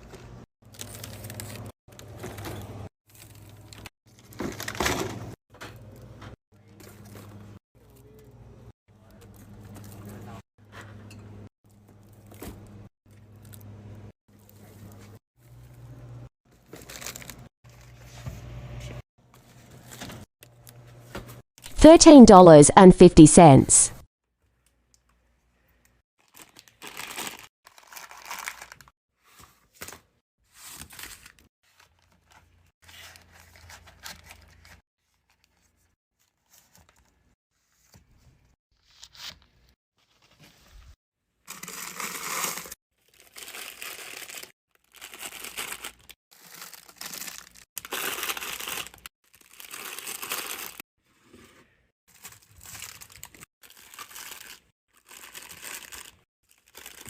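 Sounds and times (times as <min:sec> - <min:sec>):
plastic packaging crinkling: 0:16.6 - 0:17.5, 0:26.2 - 0:28.9, 0:41.5 - 0:50.8, 0:52.1 - 0:57.0.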